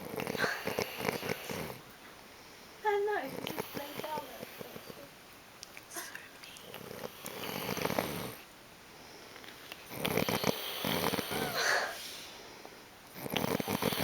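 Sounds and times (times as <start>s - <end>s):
person snoring: 6.7s - 8.4s, 9.9s - 11.9s, 13.2s - 14.0s.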